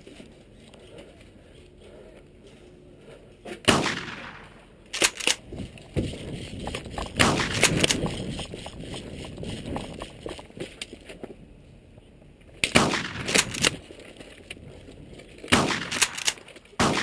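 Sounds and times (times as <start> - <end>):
airsoft gun shots: 3.7 - 5.2, 7.2 - 8.0, 12.6 - 13.8, 15.5 - 17.0.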